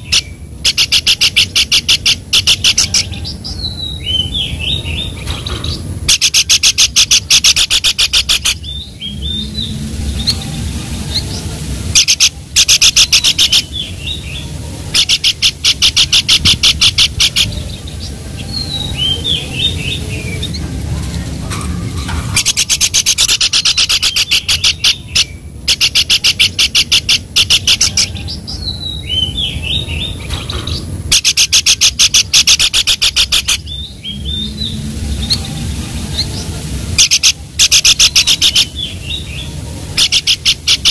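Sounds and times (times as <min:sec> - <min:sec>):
songbird rattling trills: 0:00.0 - 0:40.9.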